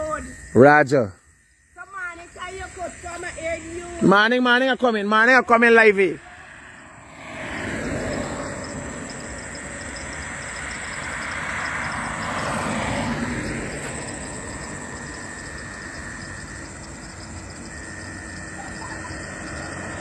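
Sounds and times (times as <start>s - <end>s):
steady road noise: 1.3s - 20.0s
vehicle passing by: 4.9s - 20.0s.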